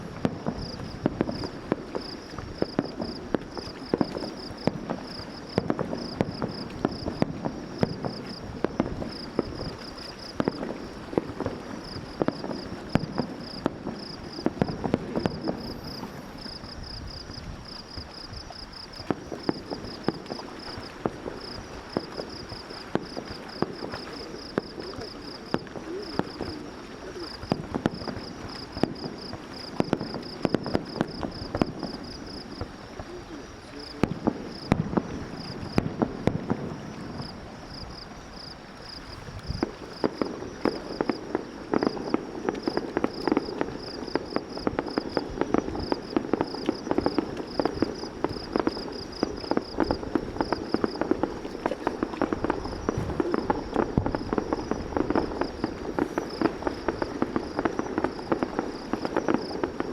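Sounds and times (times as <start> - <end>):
fireworks crackling and popping: 0.0 - 59.9
insects chirping: 0.0 - 59.9.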